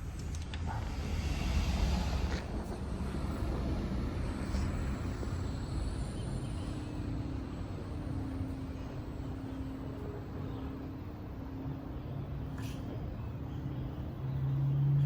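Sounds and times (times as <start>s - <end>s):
low rumble: 0.0s - 9.8s
faint steady hum: 0.0s - 15.0s.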